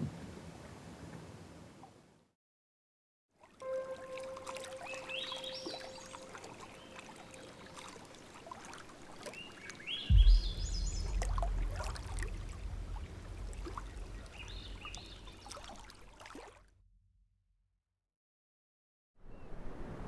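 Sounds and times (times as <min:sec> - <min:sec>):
low rumble with a thump: 0:10.1 - 0:16.7.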